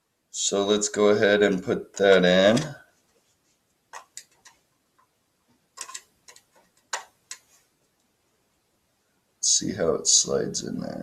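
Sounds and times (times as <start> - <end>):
plastic clicks and taps: 3.9 - 5.1, 5.8 - 7.5.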